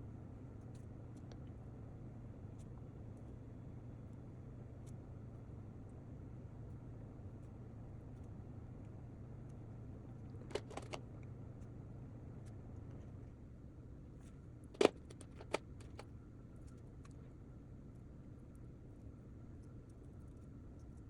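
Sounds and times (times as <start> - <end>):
steady low hum: 0.0 - 21.0
drawing materials clicking and clinking: 10.4 - 11.0, 14.8 - 16.0.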